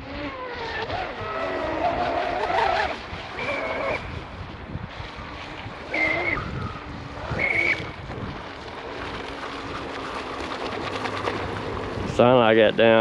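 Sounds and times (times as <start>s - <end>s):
wind noise: 0.0s - 13.0s.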